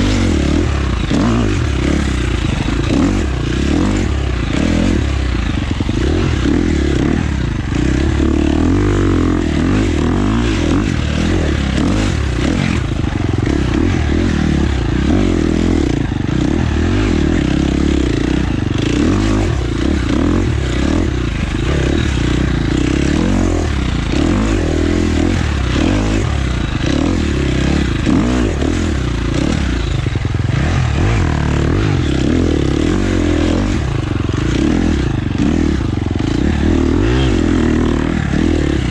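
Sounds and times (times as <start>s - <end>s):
dirt bike engine revving: 0.0s - 38.9s.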